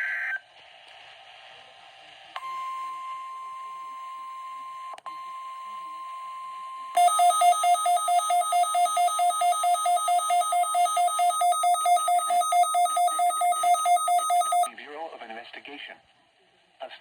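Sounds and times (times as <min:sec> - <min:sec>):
steady attention tone: 0:07.0 - 0:14.7
two-pitch rapid alarm beeping: 0:07.0 - 0:14.7.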